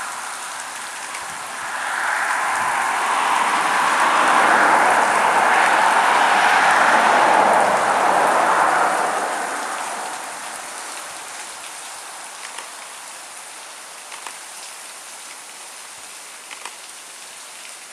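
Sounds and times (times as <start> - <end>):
waterfall rushing: 0.0 - 16.5
faint splashing ticks: 12.4 - 12.9.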